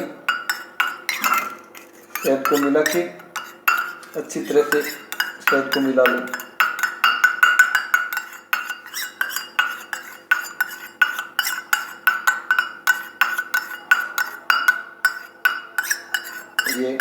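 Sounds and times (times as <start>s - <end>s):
spoon clinking against vessel: 0.0s - 17.0s.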